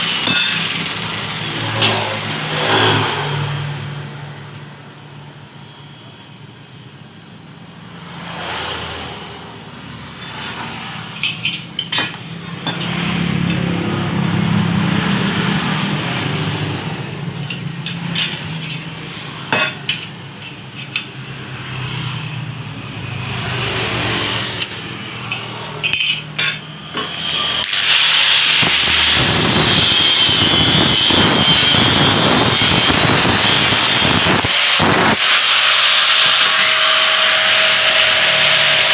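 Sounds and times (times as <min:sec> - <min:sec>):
changing machine noise: 0:00.0 - 0:03.4, 0:27.1 - 0:38.9
power tool running loudly: 0:00.0 - 0:03.4, 0:27.0 - 0:38.9
metal clanks and knocks: 0:11.1 - 0:13.7, 0:19.5 - 0:21.1, 0:24.6 - 0:27.8.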